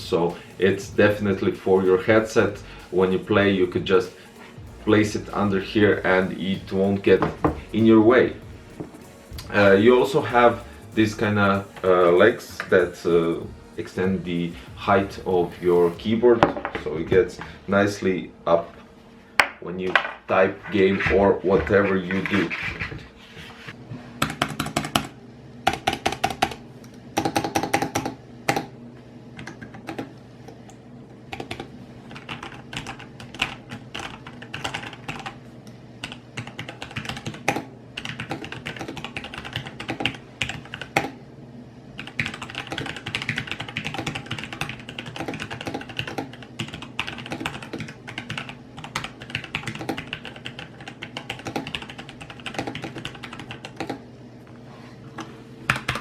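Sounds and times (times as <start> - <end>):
mechanical keyboard typing: 24.2 - 26.6, 27.2 - 28.7, 29.4 - 30.1, 31.3 - 35.4, 36.0 - 41.2, 42.0 - 54.0, 55.7 - 56.0.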